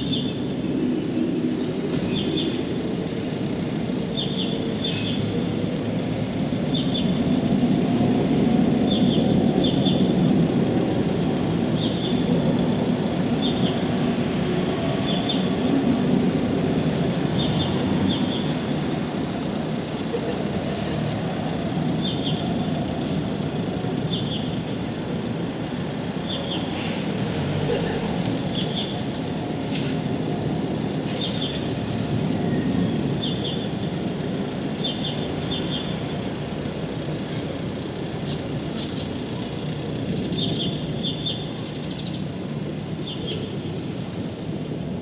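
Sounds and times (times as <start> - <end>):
bird chirping: 1.9 - 5.3, 23.8 - 24.6, 31.0 - 31.7, 32.8 - 33.8, 34.6 - 36.0, 38.2 - 42.2, 42.8 - 43.6.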